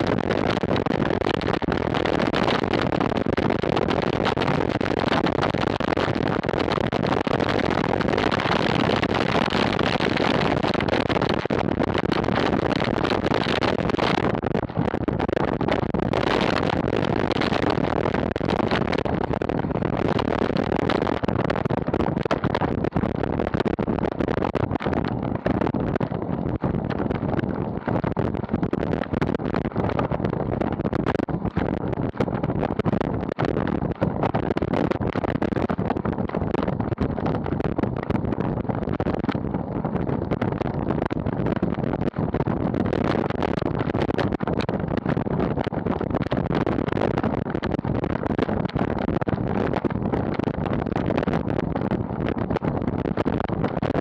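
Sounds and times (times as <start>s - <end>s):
wind rushing over microphone: 0.0s - 54.0s.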